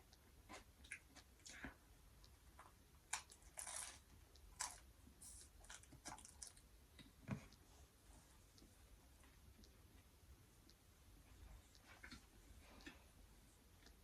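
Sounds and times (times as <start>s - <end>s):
person chewing food: 0.1s - 6.7s.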